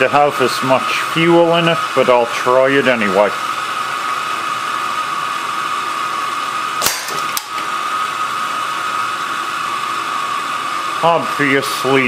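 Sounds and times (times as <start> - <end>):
propane torch hissing: 0.0 - 12.0
air rifle shots: 6.8 - 7.7.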